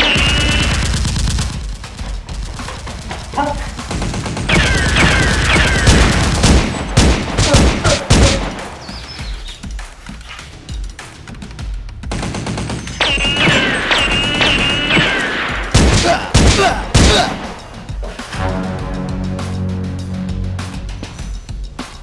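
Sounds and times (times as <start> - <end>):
rapid automatic gunfire: 0.0 - 9.3, 12.1 - 17.6
loud single gunshots: 4.3 - 9.4, 13.0 - 17.8
short falling whistles: 8.6 - 10.4, 13.0 - 15.2.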